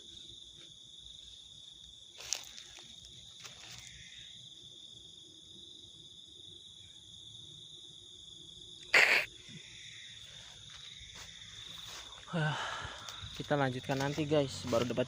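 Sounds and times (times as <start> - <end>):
insects trilling: 0.0 - 15.0.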